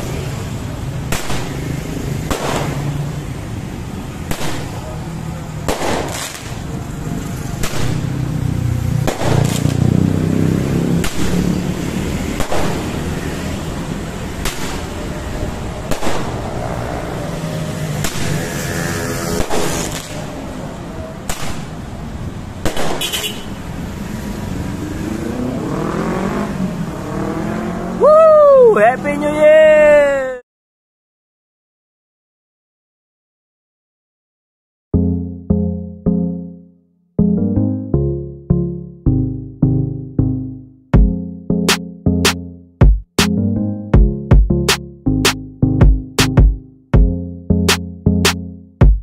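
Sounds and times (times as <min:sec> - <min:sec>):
traffic: 0:00.0 - 0:30.4
fireworks bangs: 0:02.3 - 0:03.0, 0:05.6 - 0:06.8, 0:09.0 - 0:09.8, 0:15.9 - 0:16.4, 0:19.4 - 0:20.3, 0:22.6 - 0:23.3.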